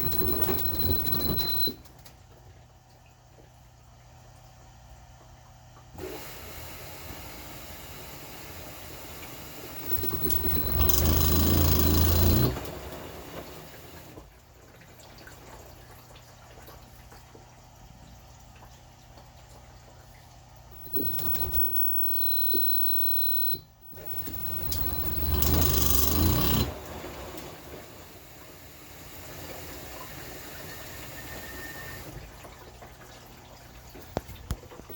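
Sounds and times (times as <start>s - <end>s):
washing machine grinding: 0.0s - 1.8s, 6.0s - 14.3s, 20.8s - 22.0s, 23.9s - 32.8s
washing machine humming: 0.0s - 34.9s.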